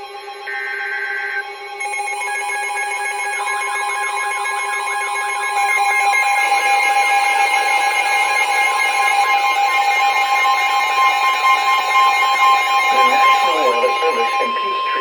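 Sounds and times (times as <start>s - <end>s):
alarm tones: 0.4s - 15.0s
data burst: 11.5s - 15.0s.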